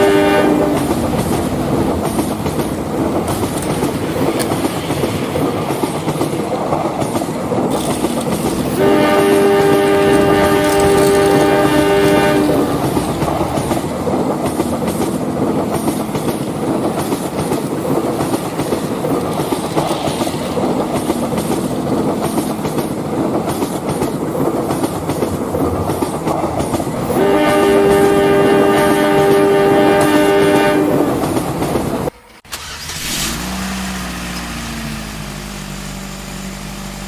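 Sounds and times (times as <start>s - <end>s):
train horn chord: 0.0s - 0.9s, 8.7s - 12.8s, 27.1s - 31.1s
train rumbling on rails: 0.0s - 37.0s.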